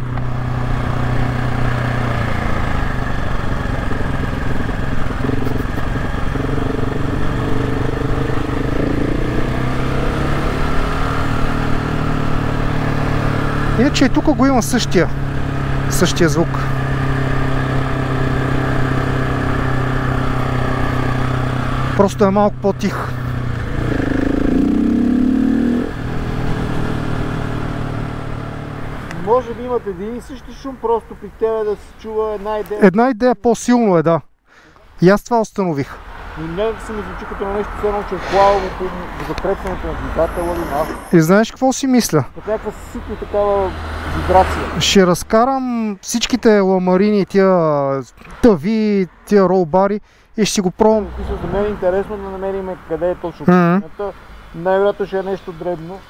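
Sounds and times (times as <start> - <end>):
motorcycle engine running at low revs: 0.0 - 14.4, 23.2 - 29.1
motorcycle engine idling and revving: 0.0 - 32.8, 36.0 - 47.3, 50.8 - 56.0
faint whistling scraping noise: 40.2 - 41.2.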